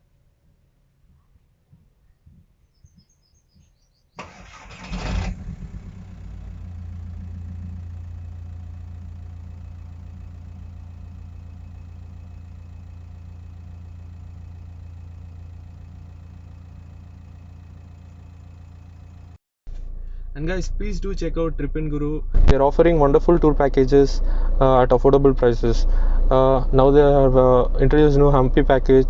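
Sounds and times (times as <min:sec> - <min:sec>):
starter motor cranking: 0:04.2 - 0:19.4
car engine idling: 0:04.2 - 0:29.0.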